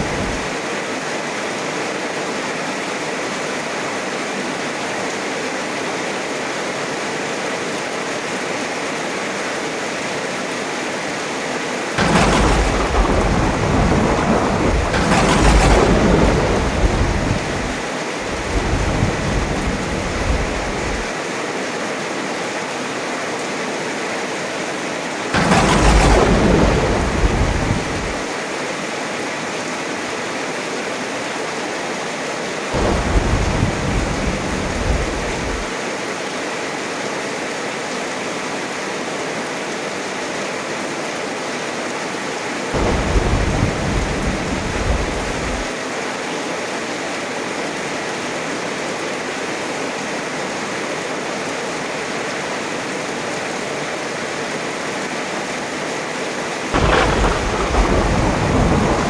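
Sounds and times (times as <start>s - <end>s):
thunder rumbling: 0.0s - 0.5s, 12.0s - 21.1s, 25.4s - 28.4s, 32.8s - 35.7s, 42.8s - 45.7s, 56.8s - 59.0s
heavy rain falling: 0.0s - 59.0s.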